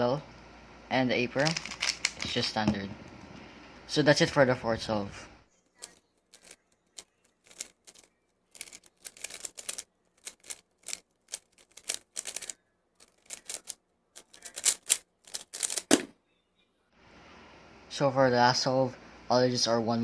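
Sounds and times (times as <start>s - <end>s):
plastic puzzle cube clacking: 1.4s - 2.4s, 5.7s - 16.0s.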